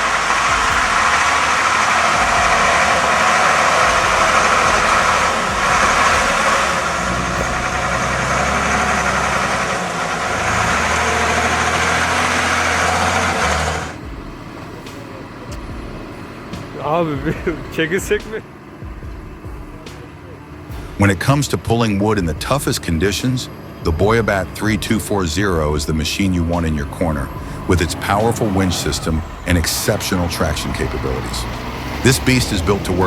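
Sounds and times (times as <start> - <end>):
heavy vehicle engine running: 0.0 - 33.0.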